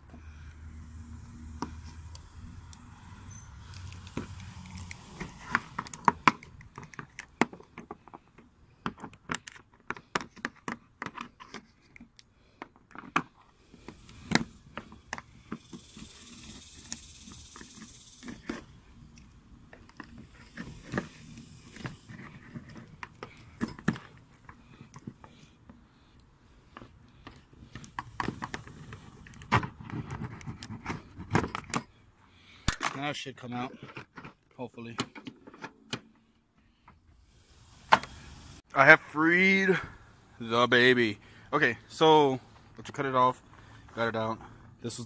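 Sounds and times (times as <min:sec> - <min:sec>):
hissing scraping: 0:00.4 - 0:07.0, 0:13.4 - 0:31.2, 0:36.8 - 0:41.4
cutting tool clicking and scraping: 0:03.7 - 0:31.9.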